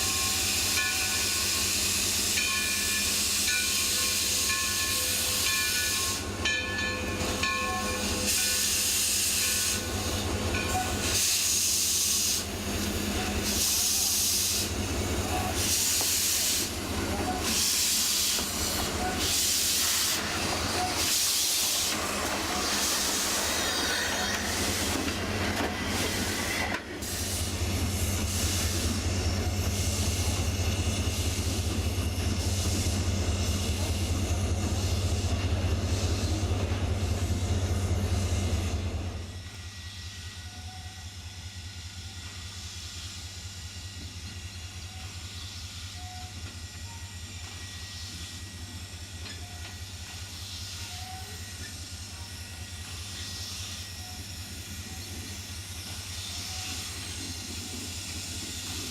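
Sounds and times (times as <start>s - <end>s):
steam exhaust hissing in pulses: 11.0s - 40.3s.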